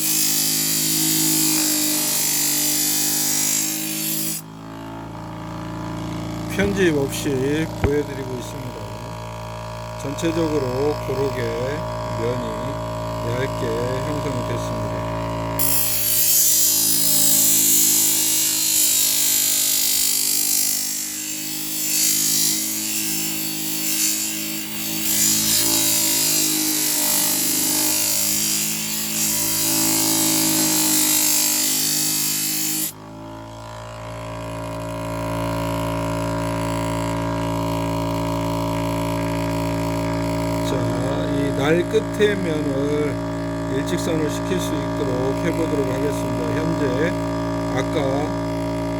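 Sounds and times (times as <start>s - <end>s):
knife grinding on abrasive: 0.0s - 4.4s, 15.4s - 33.0s
motor humming: 0.0s - 48.9s.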